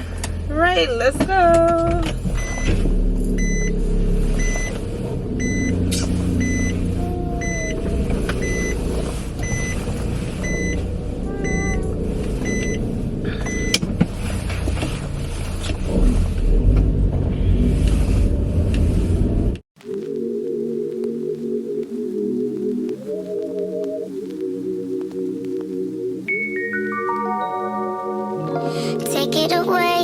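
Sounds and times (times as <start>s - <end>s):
car engine hum and road noise: 0.0s - 19.7s
car warning chime beeping: 2.3s - 13.8s.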